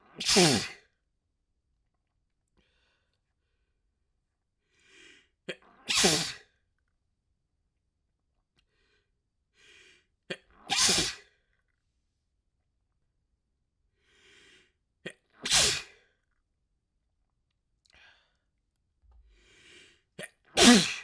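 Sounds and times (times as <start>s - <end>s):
person sneezing: 0.1s - 0.8s, 5.5s - 6.4s, 10.3s - 11.3s, 15.4s - 16.0s, 20.2s - 21.0s
drawn-in breath: 14.0s - 14.8s, 19.3s - 20.0s.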